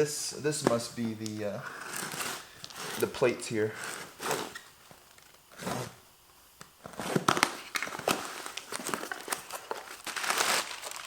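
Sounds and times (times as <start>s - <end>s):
packaging rustling and crinkling: 6.8s - 11.0s.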